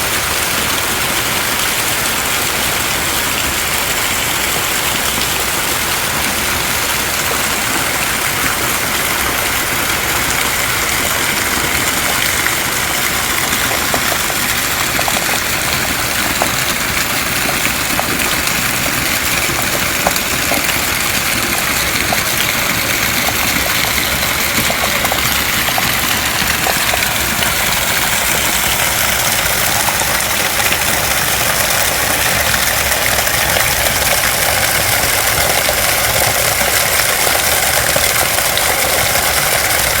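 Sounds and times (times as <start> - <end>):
heavy rain falling: 0.0 - 40.0
running water rushing: 0.0 - 40.0.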